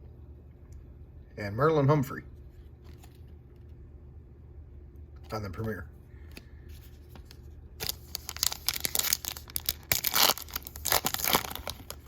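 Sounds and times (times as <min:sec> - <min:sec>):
wrapper tearing and crinkling: 0:07.8 - 0:12.0.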